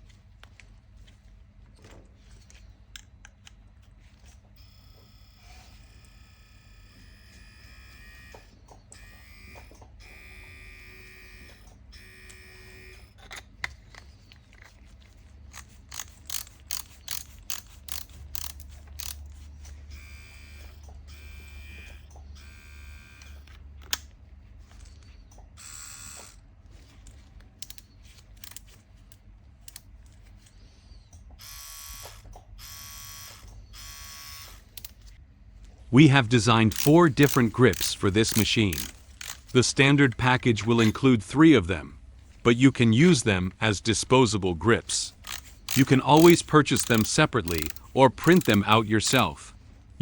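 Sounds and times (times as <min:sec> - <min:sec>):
small motor buzzing: 0:04.6 - 0:13.1, 0:19.9 - 0:23.4, 0:25.6 - 0:26.4, 0:31.4 - 0:34.7
clicks of parts being fitted: 0:45.2 - 0:49.2.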